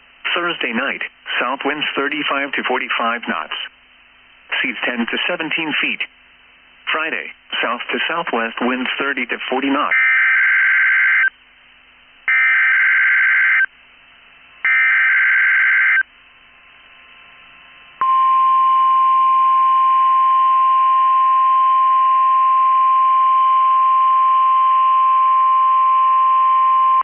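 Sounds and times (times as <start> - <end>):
radio hiss: 0.2 - 3.8, 4.4 - 10.3.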